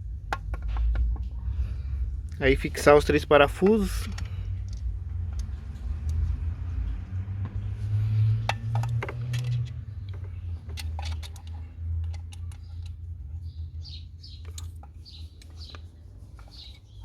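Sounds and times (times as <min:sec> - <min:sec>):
steady low hum: 0:00.0 - 0:08.7
metallic clicks of screws and tool: 0:08.4 - 0:13.0.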